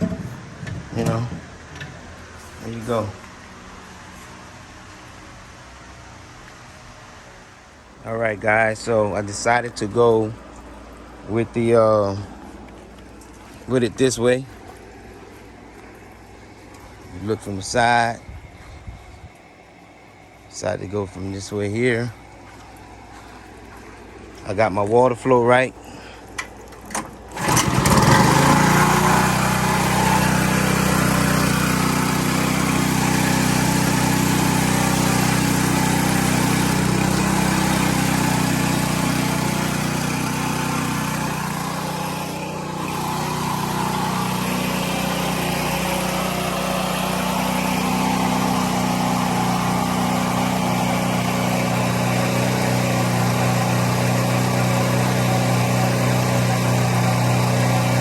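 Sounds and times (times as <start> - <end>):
small gasoline engine running: 26.8 - 58.0.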